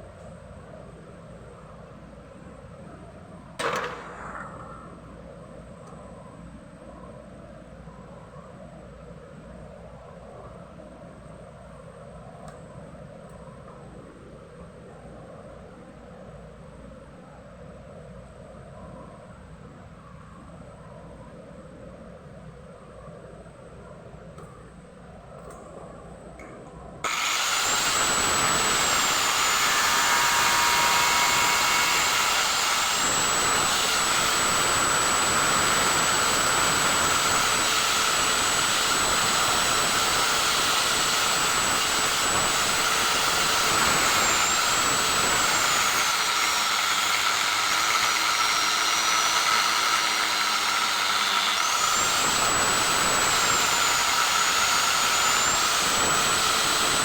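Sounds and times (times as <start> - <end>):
electric power tool whining: 27.0 - 57.0.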